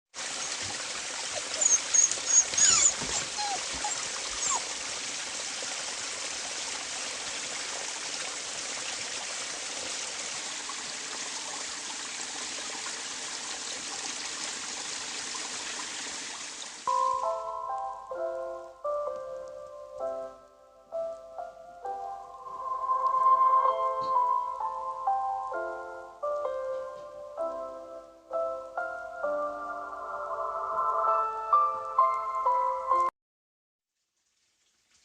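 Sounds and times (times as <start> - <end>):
running water: 0.2 - 18.5, 34.0 - 35.0.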